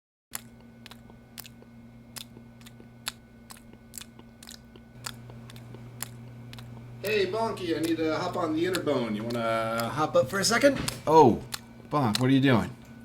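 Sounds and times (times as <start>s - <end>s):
faint steady hum: 0.3s - 13.0s.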